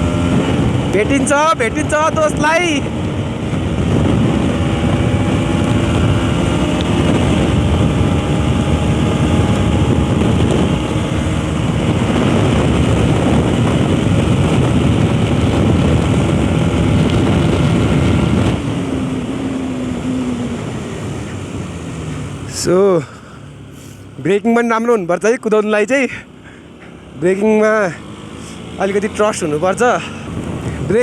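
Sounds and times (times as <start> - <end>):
wind rushing over microphone: 0.0 - 23.0, 27.6 - 31.0
motorcycle engine at high revs: 0.0 - 23.9, 26.5 - 31.0.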